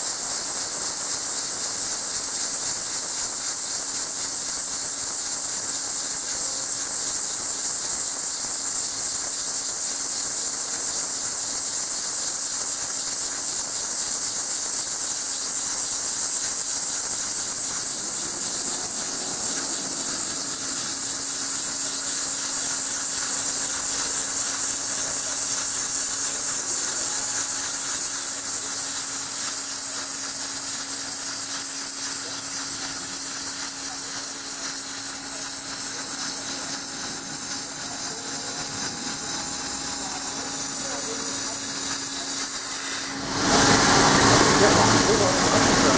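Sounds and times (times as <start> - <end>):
drilling machine hissing: 0.0 - 45.9
steady low hum: 16.1 - 28.8.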